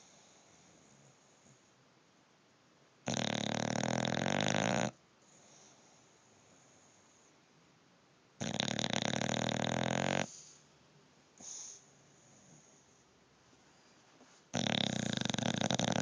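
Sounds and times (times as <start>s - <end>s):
dog snoring: 3.0s - 7.3s, 8.4s - 10.5s, 14.5s - 16.0s.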